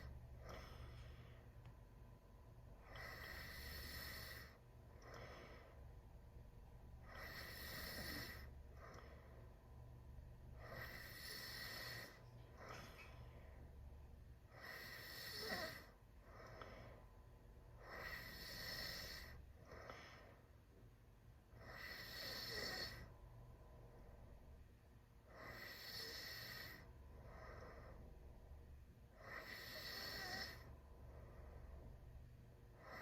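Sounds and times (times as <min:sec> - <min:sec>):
faint breaths: 0:00.0 - 0:33.0
rasping snore: 0:02.8 - 0:04.6, 0:07.0 - 0:08.5, 0:10.6 - 0:12.8, 0:14.5 - 0:15.9, 0:17.8 - 0:19.4, 0:21.6 - 0:23.1, 0:25.3 - 0:26.8, 0:29.2 - 0:30.7.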